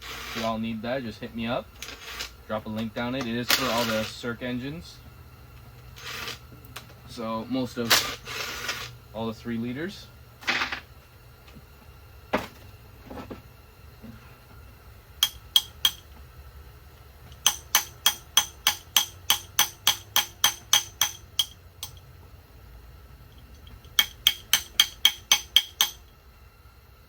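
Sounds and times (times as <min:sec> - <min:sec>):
metallic tool clicks: 0:15.2 - 0:16.1, 0:17.3 - 0:22.0, 0:23.4 - 0:26.1.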